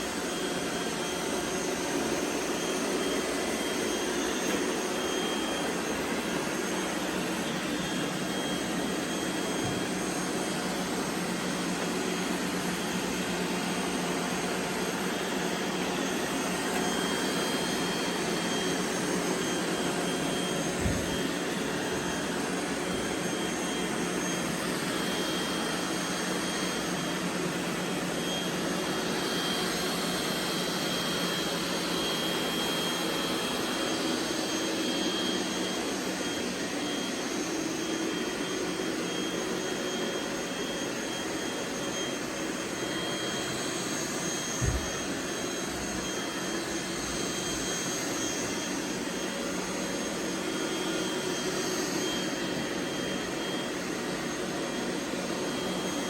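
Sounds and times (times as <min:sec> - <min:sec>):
robot vacuum cleaners whirring: 0:00.0 - 0:56.0.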